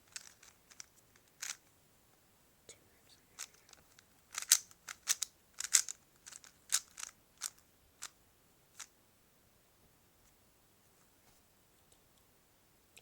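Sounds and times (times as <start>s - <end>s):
puzzle cube clicking as turned: 0.1s - 1.6s, 3.4s - 8.1s.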